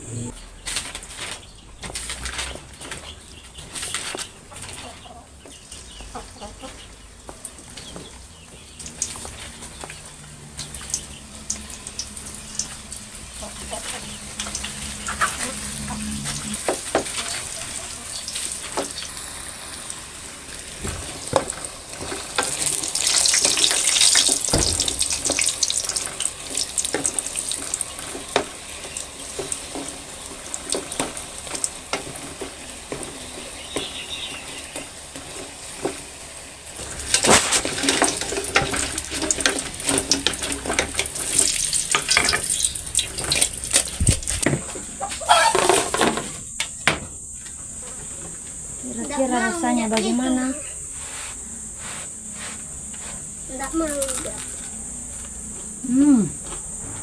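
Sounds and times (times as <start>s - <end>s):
utensil stirring in pan: 7.4s - 44.4s
food sizzling in hot oil: 8.5s - 44.4s.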